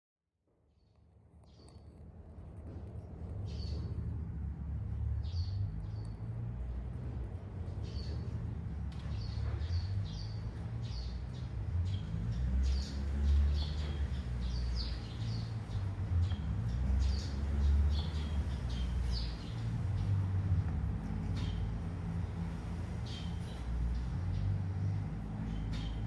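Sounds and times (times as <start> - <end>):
low rumble: 1.7 - 26.0
small birds chirping: 7.7 - 26.0.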